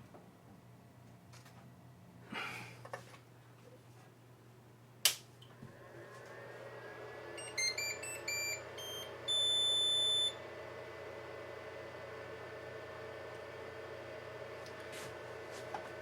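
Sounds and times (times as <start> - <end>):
cooling fans humming: 0.0 - 16.0
startup beeps: 7.4 - 10.4.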